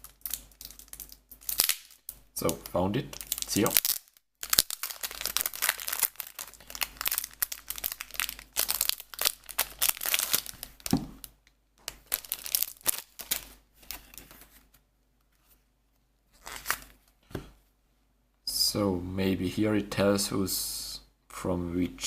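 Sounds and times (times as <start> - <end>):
wrapping torn and crumpled: 0.0 - 11.3, 11.9 - 14.6, 16.4 - 16.9.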